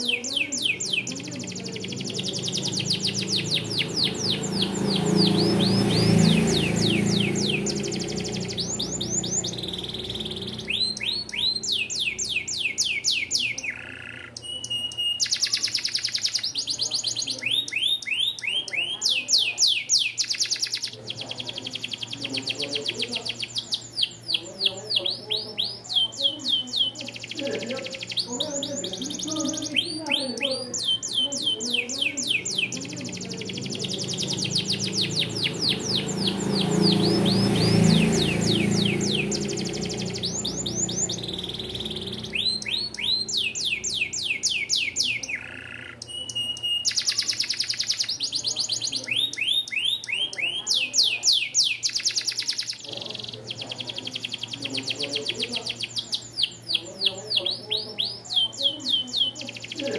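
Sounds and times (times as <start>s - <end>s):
canary singing trills: 0.0s - 59.9s.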